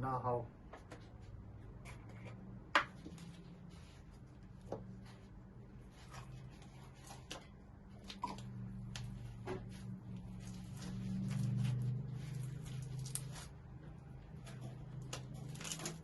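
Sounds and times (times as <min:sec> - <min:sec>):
crunchy slime crackling: 0:05.9 - 0:13.8, 0:15.0 - 0:16.0.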